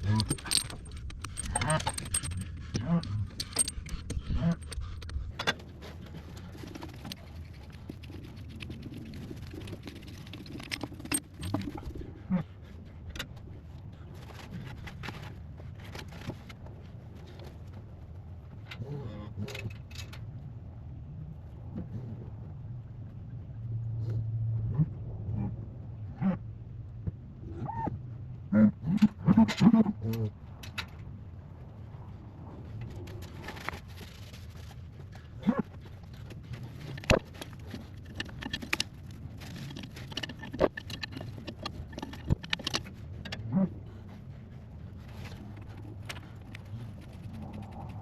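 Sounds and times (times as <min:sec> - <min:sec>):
metal tools clinking and rattling: 0:00.0 - 0:05.6, 0:10.4 - 0:11.8, 0:36.1 - 0:43.4
steady low hum: 0:00.0 - 0:48.0.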